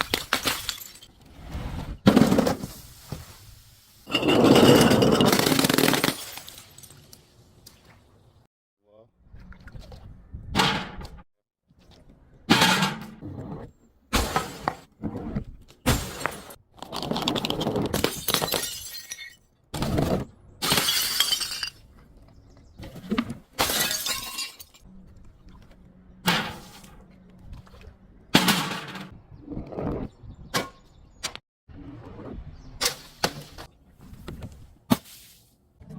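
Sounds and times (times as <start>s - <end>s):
glass bottles shattering: 0.0s - 1.2s, 4.1s - 7.2s, 17.4s - 19.4s, 20.6s - 21.9s, 23.6s - 24.9s.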